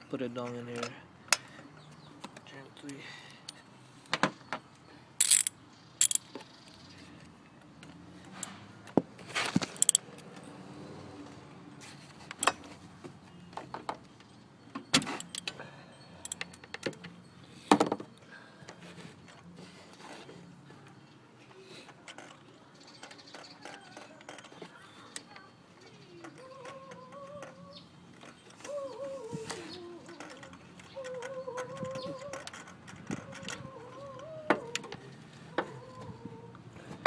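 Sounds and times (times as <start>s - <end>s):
metal hand tools clicking: 5.2s - 6.2s, 9.8s - 10.0s.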